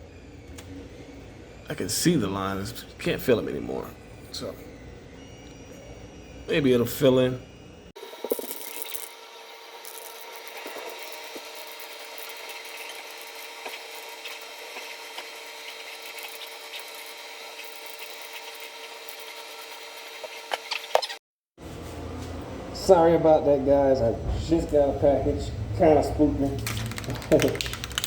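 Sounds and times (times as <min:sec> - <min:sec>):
sanding plastic: 0:09.9 - 0:21.1.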